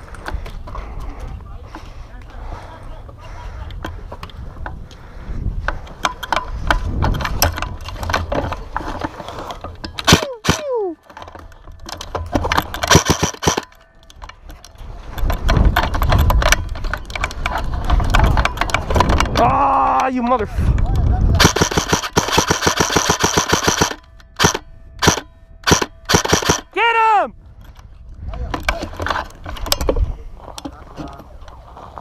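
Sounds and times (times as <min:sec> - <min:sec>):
sharp clicks and clatter: 0:05.6 - 0:26.7.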